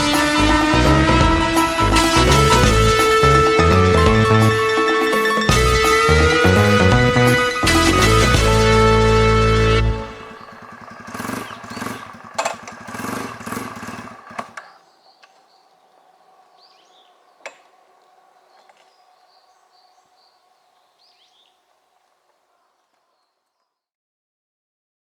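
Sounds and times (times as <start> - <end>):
motorcycle engine revving: 0.0 - 22.0
faint chirping calls: 10.2 - 23.8.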